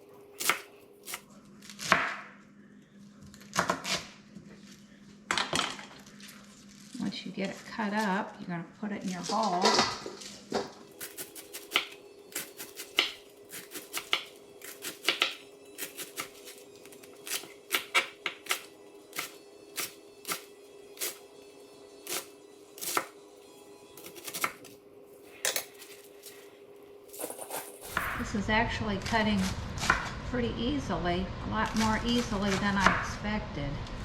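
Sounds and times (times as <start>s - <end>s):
knife chopping cabbage: 0.4s - 2.3s, 11.0s - 21.2s, 22.0s - 23.1s, 24.0s - 24.7s, 27.2s - 28.2s.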